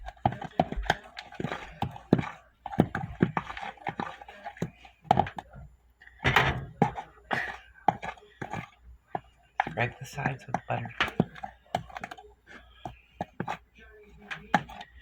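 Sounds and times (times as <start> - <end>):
fork knocking in bowl: 6.2 - 15.0.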